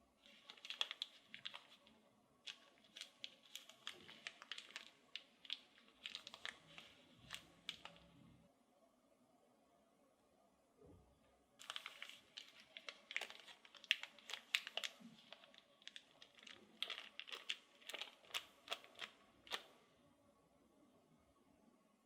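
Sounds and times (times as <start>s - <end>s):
plastic wrapper crinkling: 0.2s - 8.2s, 11.6s - 19.8s.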